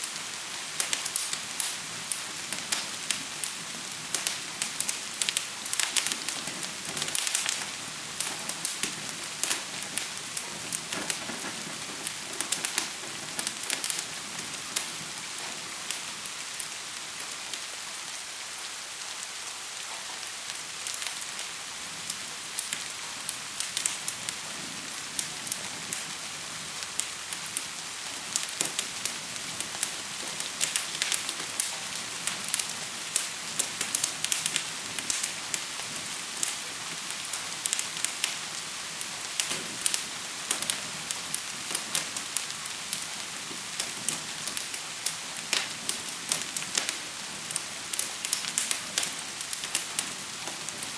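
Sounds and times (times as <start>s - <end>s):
gentle rain hiss: 0.0s - 50.9s
wood fire crackling: 0.0s - 50.9s.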